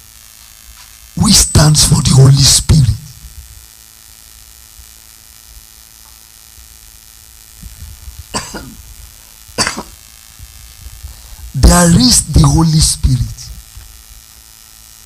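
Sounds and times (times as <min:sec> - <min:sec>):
low steady hum: 0:01.1 - 0:14.4
person clearing throat: 0:08.3 - 0:08.9, 0:09.6 - 0:10.0.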